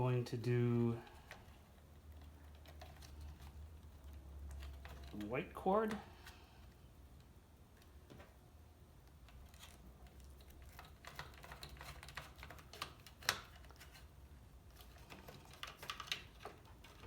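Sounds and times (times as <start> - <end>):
small parts clicking and tapping: 9.0 - 17.0.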